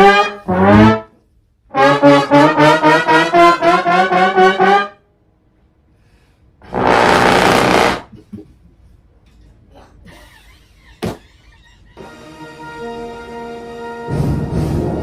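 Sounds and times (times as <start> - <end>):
trombone-like brass notes: 0.0 - 5.0, 6.6 - 8.1.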